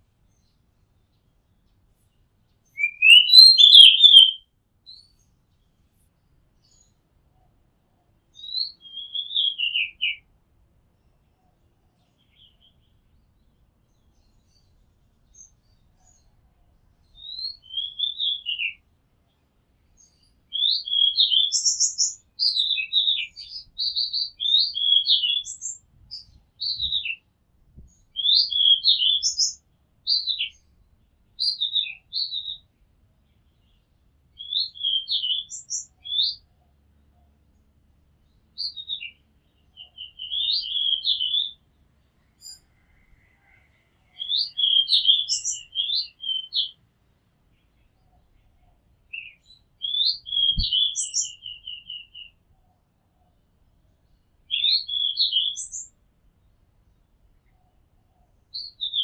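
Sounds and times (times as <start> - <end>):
bird singing whistled phrases: 2.8 - 4.4, 8.4 - 10.2, 17.2 - 18.8, 20.5 - 27.2, 28.1 - 30.6, 31.4 - 32.6, 34.4 - 36.4, 39.8 - 41.6, 44.2 - 46.8, 49.1 - 52.4, 54.5 - 55.9, 58.5 - 59.0.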